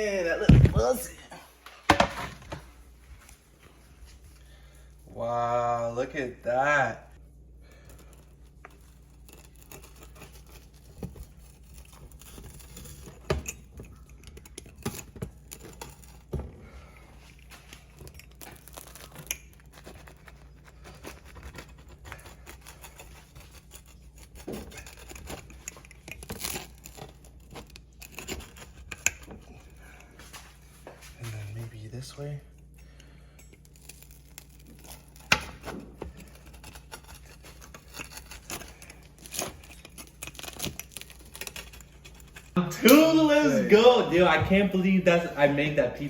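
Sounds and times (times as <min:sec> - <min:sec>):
pizza crackling and tearing: 0:04.5 - 0:44.7.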